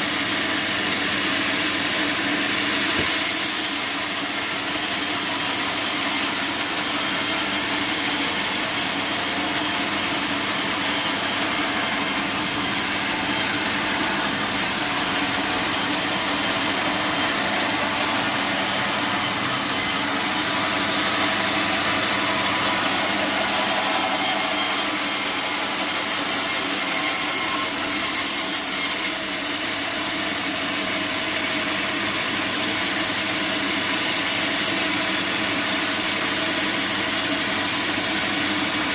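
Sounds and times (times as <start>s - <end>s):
bandsaw cutting log: 0.0s - 38.9s
machine running hum: 8.5s - 26.6s.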